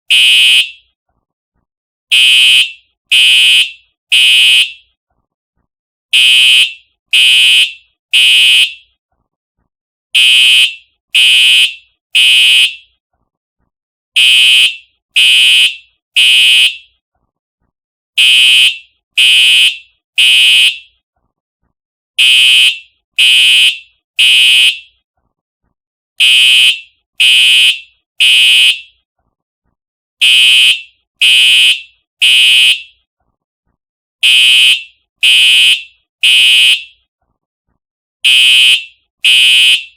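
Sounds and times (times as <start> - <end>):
fire alarm horn blasts: 0.1 - 0.9, 2.1 - 4.8, 6.1 - 8.9, 10.2 - 12.9, 14.2 - 17.0, 18.2 - 21.0, 22.2 - 24.9, 26.2 - 29.0, 30.2 - 33.0, 34.2 - 37.0, 38.2 - 39.9.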